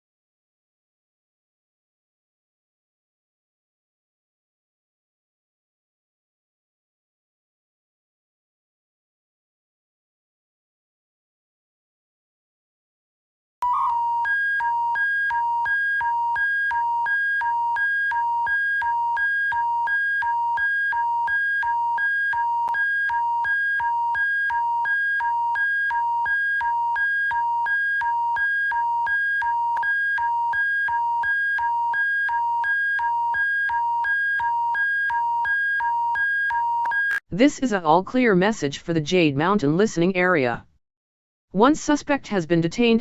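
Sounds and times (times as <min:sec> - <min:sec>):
electronic two-tone alarm pulsing: 0:13.6 - 0:37.2.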